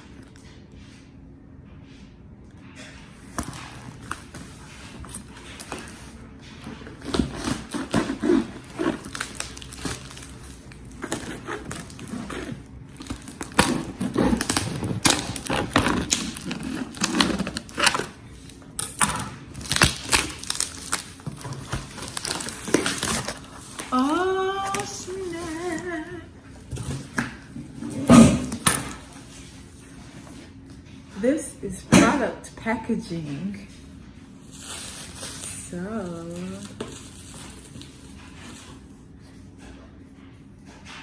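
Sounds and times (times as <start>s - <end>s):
package being torn open: 7.0s - 25.9s.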